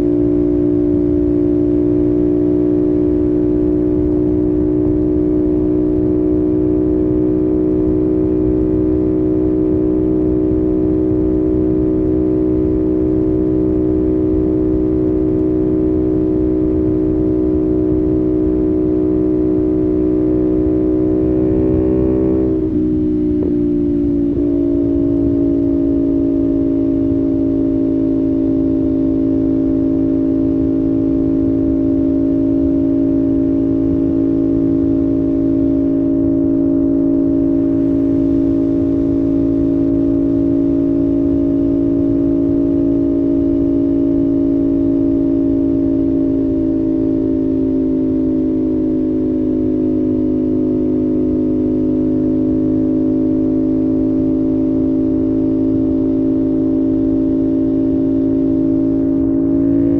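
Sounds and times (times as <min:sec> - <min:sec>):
motorcycle engine droning: 0:00.0 - 0:59.9.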